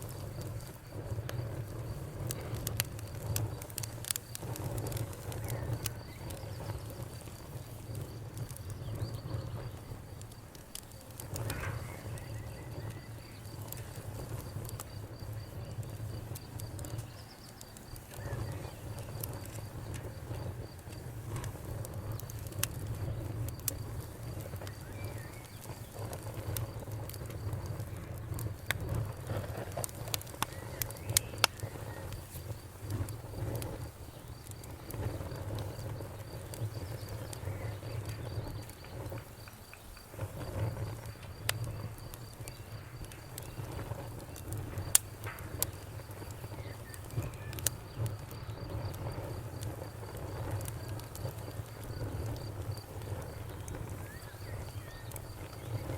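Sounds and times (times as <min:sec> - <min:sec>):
campfire crackling and popping: 0:00.0 - 0:55.9
loud fire snaps: 0:00.0 - 0:55.9
low rumble of flames: 0:00.0 - 0:55.9.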